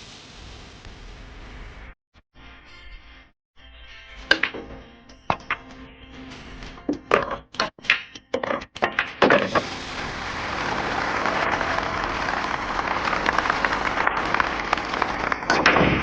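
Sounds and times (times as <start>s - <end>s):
crowd applauding: 9.6s - 16.0s.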